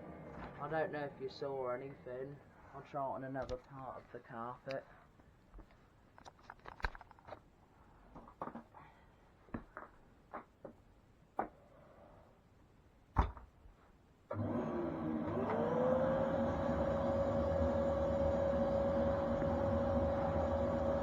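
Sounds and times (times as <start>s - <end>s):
handling knocks and clicks: 5.6s - 7.5s
vacuum cleaner motor running: 14.3s - 21.0s.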